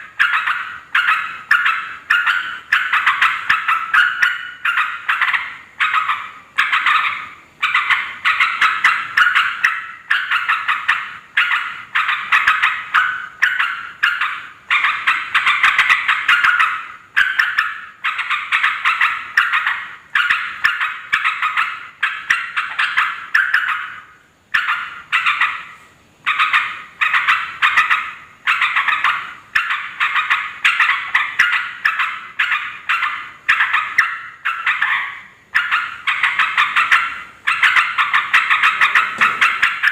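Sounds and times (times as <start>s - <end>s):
bulbuls chattering: 24.6s - 39.9s.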